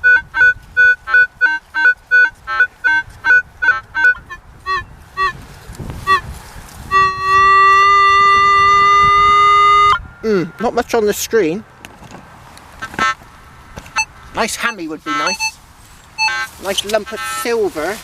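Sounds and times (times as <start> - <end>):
metal detector beeps: 0.0 - 5.4, 6.9 - 10.8, 13.9 - 15.6, 16.2 - 17.5
metal detector steady tone: 0.0 - 5.4, 6.9 - 10.8, 13.9 - 15.6, 16.2 - 17.6.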